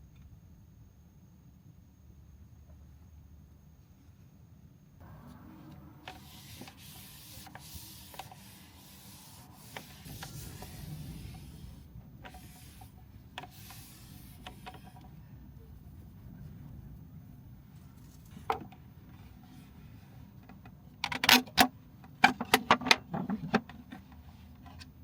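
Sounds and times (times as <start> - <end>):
steady low rumble: 5.0 - 20.4.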